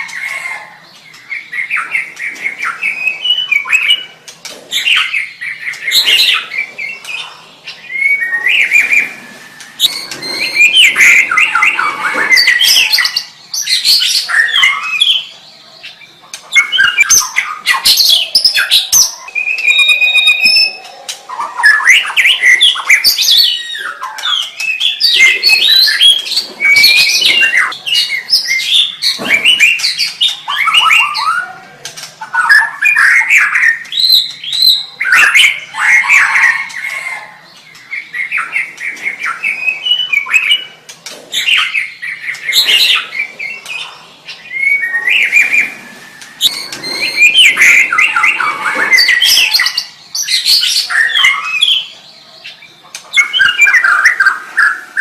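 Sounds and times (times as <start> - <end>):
bird singing whistled phrases: 16.6 - 31.5.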